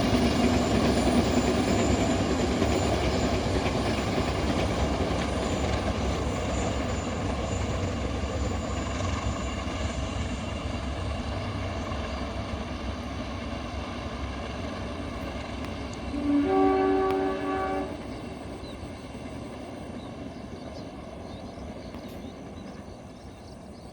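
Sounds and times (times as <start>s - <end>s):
train rumbling over rails: 0.0s - 23.9s
locomotive horn blast: 16.1s - 18.1s.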